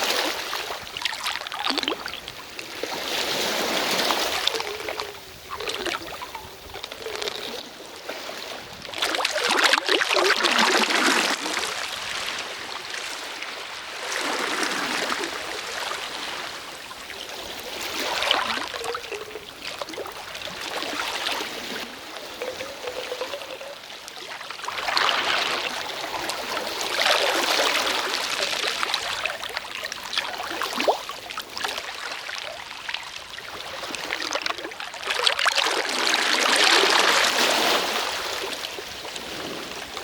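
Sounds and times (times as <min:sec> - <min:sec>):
sea waves washing: 0:00.0 - 0:30.8.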